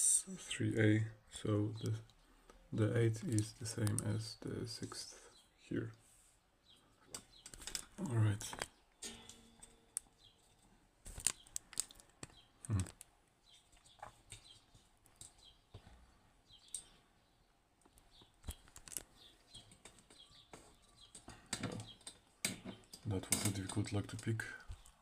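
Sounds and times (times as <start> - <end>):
metal lock parts clicking: 21.0 - 24.2.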